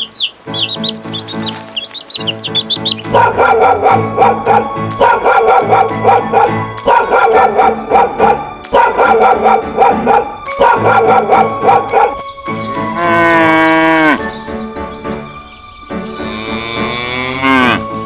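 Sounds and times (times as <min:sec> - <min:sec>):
background music: 0:00.0 - 0:18.0
dog barking and yipping: 0:03.0 - 0:12.3.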